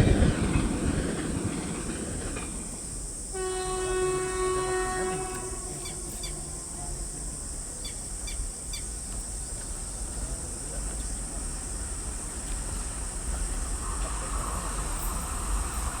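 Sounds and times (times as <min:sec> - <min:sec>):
low rumble: 0:00.0 - 0:01.7
insects droning: 0:00.0 - 0:16.0.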